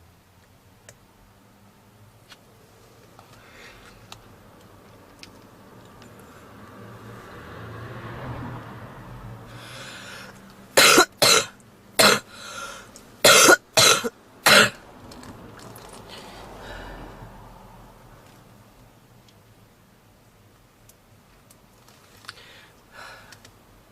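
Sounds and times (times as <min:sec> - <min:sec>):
soft breathing: 0:03.2 - 0:04.2, 0:09.5 - 0:10.5, 0:12.3 - 0:13.0, 0:16.0 - 0:17.4, 0:22.1 - 0:23.5
woman coughing: 0:10.8 - 0:12.3, 0:13.2 - 0:14.8.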